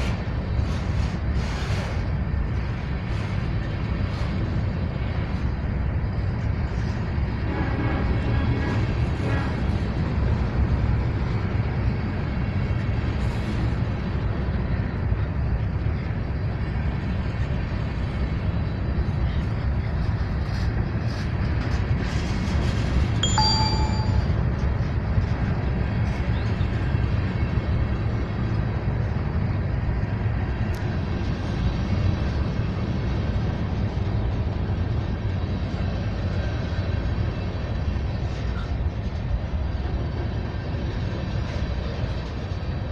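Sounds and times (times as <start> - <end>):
train wheels rumbling on rails: 0.0 - 42.9
high metallic ring: 23.2 - 24.5.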